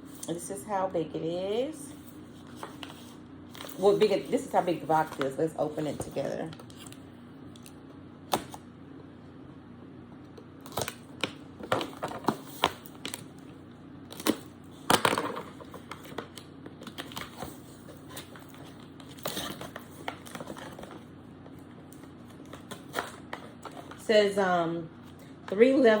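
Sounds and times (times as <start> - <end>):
cardboard packaging crinkling: 10.6 - 24.0.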